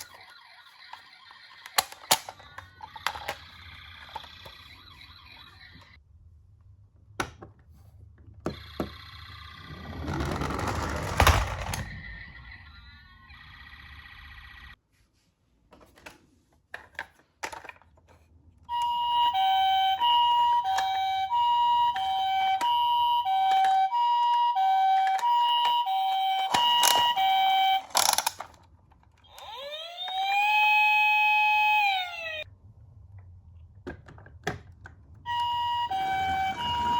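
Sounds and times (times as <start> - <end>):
toy clicks: 0.0 - 5.1, 24.8 - 30.8
toy two-tone ambulance siren: 0.0 - 6.0, 8.5 - 14.8, 18.7 - 28.6, 29.2 - 32.5, 35.3 - 36.9
wailing siren: 8.6 - 10.4, 11.8 - 14.8, 18.7 - 27.9, 29.3 - 32.5, 35.3 - 36.9.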